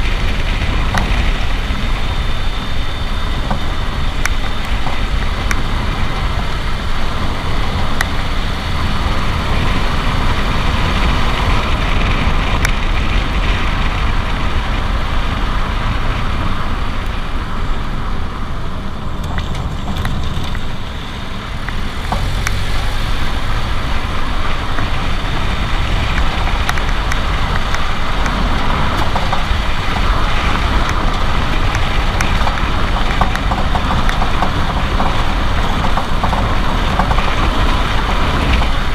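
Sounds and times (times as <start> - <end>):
suspension clicks and knocks: 0.0 - 15.0, 18.9 - 38.9
vehicle and road rumble: 0.0 - 38.9.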